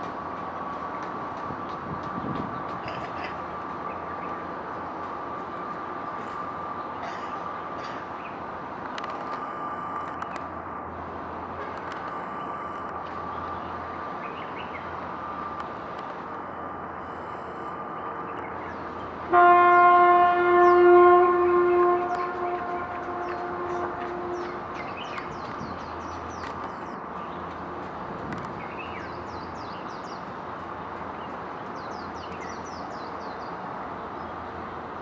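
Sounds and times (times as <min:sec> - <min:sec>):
ship's horn blast: 0:19.2 - 0:25.7.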